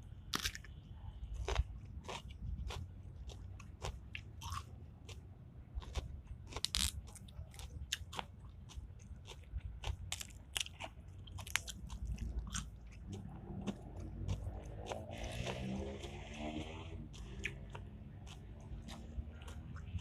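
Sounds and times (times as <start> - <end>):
person chewing crunchy food: 0.2 - 20.0.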